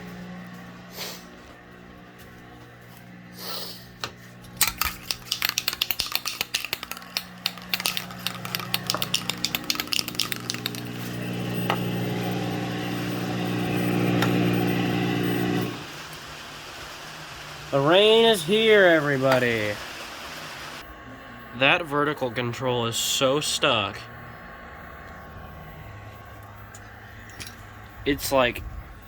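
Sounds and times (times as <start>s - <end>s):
television electrical buzz: 0.0s - 29.0s
rapid irregular clicking: 4.6s - 11.3s.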